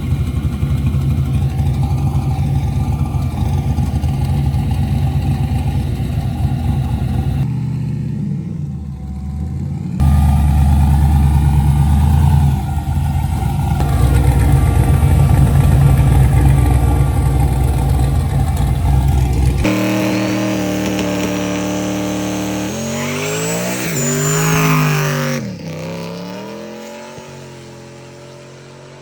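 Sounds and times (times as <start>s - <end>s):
car engine accelerating hard: 0.0s - 29.0s
high whine: 10.0s - 27.6s.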